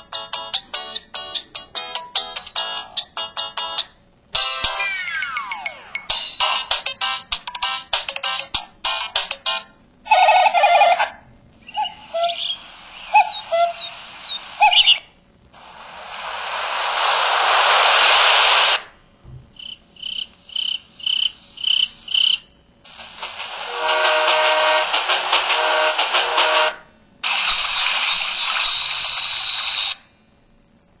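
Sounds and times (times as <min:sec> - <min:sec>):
chirping bird-like calls: 0:10.1 - 0:15.1
electronic hiss: 0:11.9 - 0:19.0, 0:19.6 - 0:30.1.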